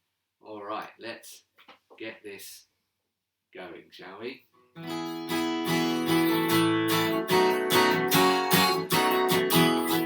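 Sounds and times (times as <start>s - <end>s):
acoustic guitar strumming: 4.8s - 10.0s.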